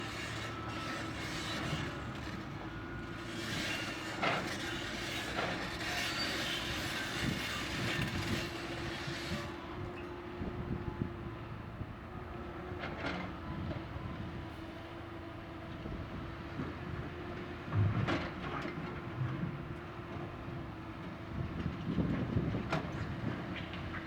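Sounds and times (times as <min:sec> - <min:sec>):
excavator diesel engine: 0:00.0 - 0:09.8.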